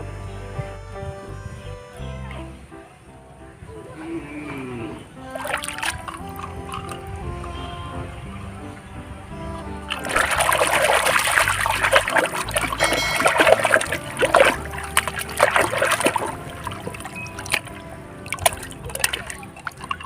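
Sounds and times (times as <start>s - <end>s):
water gushing over toys: 5.2s - 7.1s, 9.9s - 20.0s
water drips and splashes: 5.2s - 7.6s, 9.8s - 20.0s.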